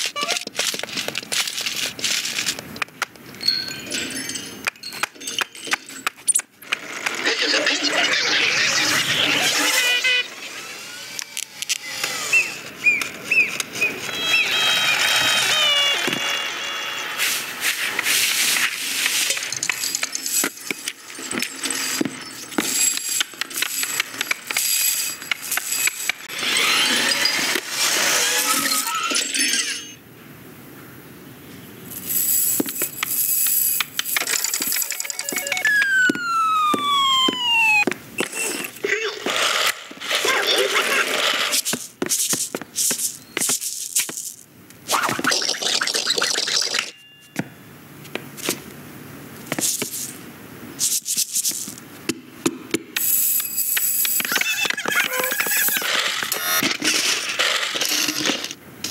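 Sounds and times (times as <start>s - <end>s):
descending whistle-like tone: 11.8s - 15.0s, 35.5s - 37.8s
short squeaky chirps: 12.2s - 16.4s.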